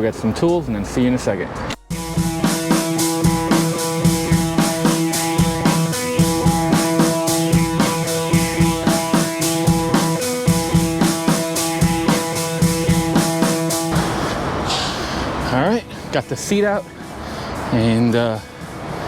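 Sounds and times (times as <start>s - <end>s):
rock music: 1.8s - 14.4s
drum kit beat: 1.8s - 15.1s.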